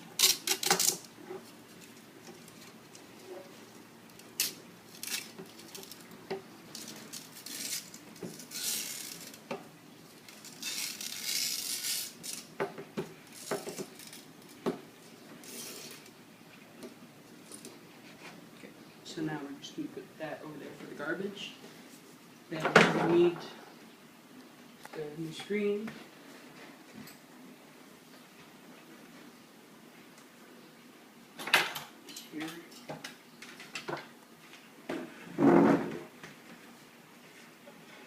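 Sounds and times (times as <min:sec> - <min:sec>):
screen mesh rustling: 0:00.0 - 0:16.2.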